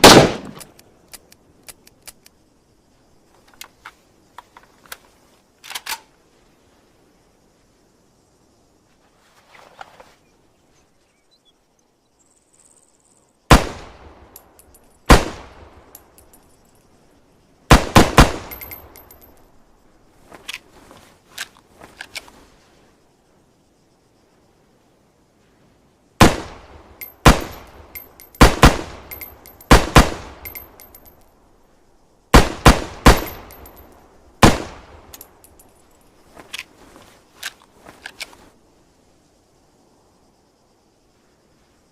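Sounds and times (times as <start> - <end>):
rifle shots: 0.0 - 0.6, 15.1 - 15.6, 17.7 - 18.8, 26.2 - 27.7, 28.3 - 30.6, 32.3 - 33.6, 34.4 - 35.0.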